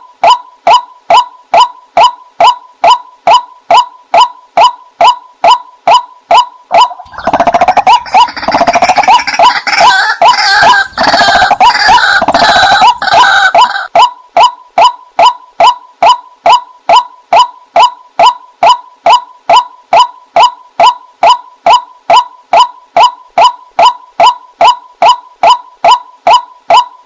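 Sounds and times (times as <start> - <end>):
waterhen calls: 5.9 - 14.6.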